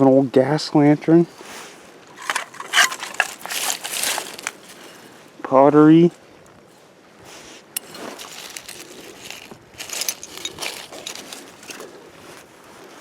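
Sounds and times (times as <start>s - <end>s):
hands rummaging through debris: 2.1s - 5.1s, 7.8s - 12.4s
crunching of dirt and shards: 2.1s - 5.2s, 7.8s - 12.5s.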